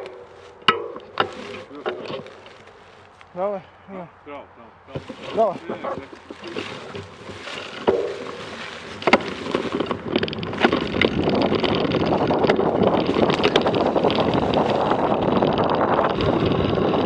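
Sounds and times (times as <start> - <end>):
bike tyres rumbling on dirt: 0.0 - 3.1, 4.9 - 17.0
bike parts knocking and rattling: 0.0 - 3.2, 4.9 - 17.0
wind buffeting microphone: 4.9 - 17.0.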